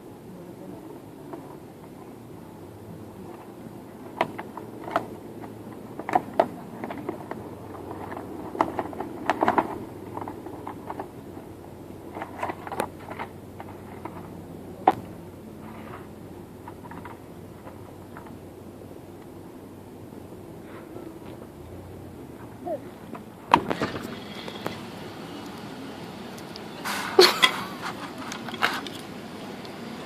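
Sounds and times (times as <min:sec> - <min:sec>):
steady low hum: 0:00.0 - 0:30.0
toys clicking and knocking: 0:03.3 - 0:11.4.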